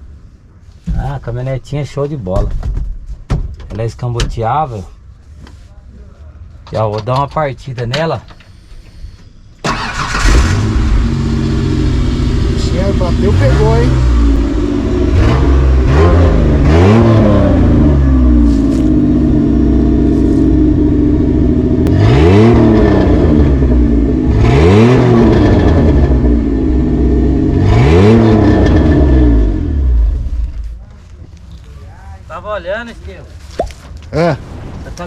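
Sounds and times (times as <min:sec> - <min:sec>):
engine revving: 0:09.7 - 0:30.5.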